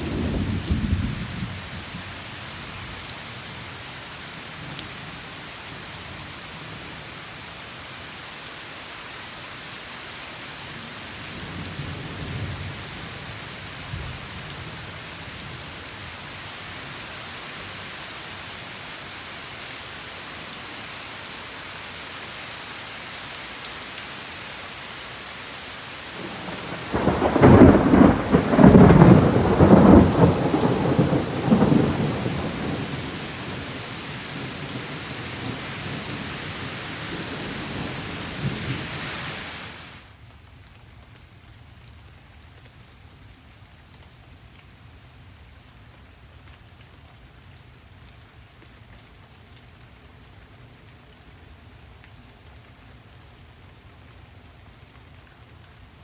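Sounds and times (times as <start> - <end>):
loud thunderclap: 0.0 - 1.5, 26.2 - 36.2
faint low thunder rumble: 0.0 - 3.0, 26.2 - 38.8
steady rain falling: 0.0 - 56.0.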